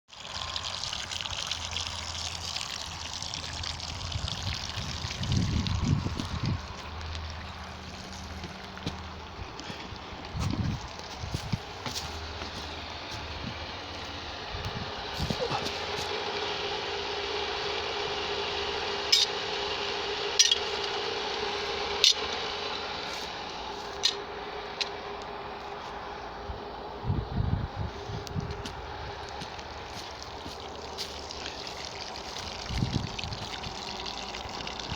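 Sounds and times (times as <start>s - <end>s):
water pouring from pump outlet: 0.1s - 25.0s, 28.6s - 34.9s
steady low hum: 0.2s - 34.9s
low rumbling: 3.0s - 18.0s, 19.6s - 34.9s.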